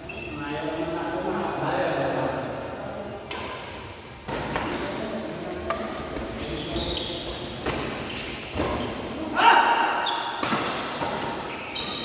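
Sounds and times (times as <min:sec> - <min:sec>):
rackets hitting shuttlecock: 0:10.3 - 0:11.5.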